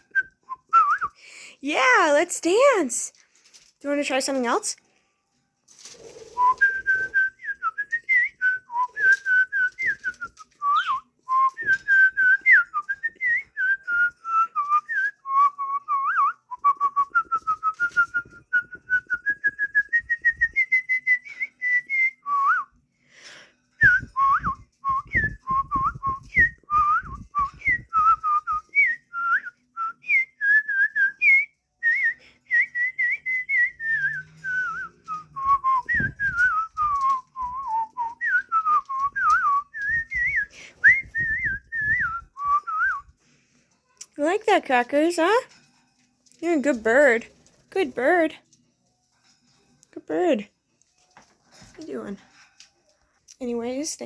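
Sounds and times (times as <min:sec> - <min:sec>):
person whistling a lively tune: 0:00.0 - 0:01.3, 0:06.3 - 0:43.3.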